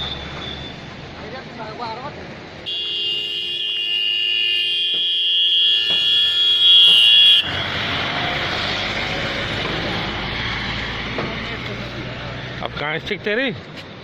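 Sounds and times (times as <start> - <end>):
vehicle horn blast: 2.6 - 7.5.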